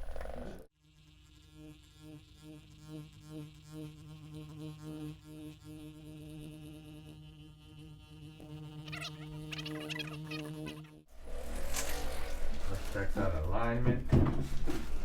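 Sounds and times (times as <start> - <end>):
electric massage gun buzzing: 0.0 - 0.7.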